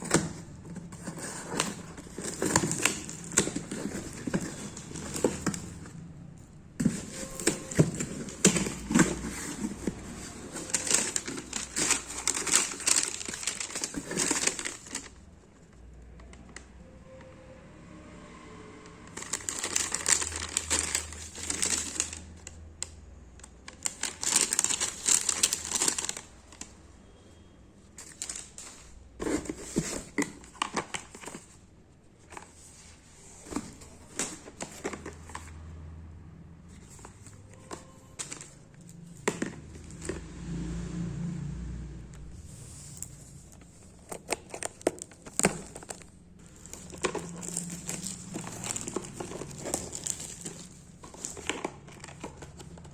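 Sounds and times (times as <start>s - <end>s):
packaging crinkling: 6.8s - 15.4s, 19.2s - 22.6s, 23.6s - 26.8s, 42.8s - 52.9s.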